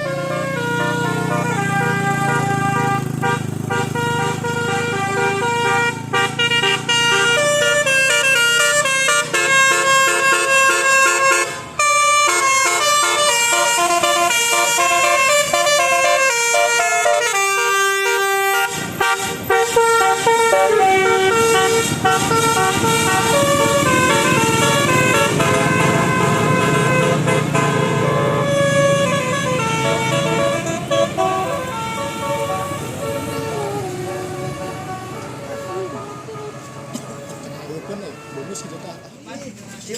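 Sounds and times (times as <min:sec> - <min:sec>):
musical truck horn tune: 0:00.0 - 0:39.3.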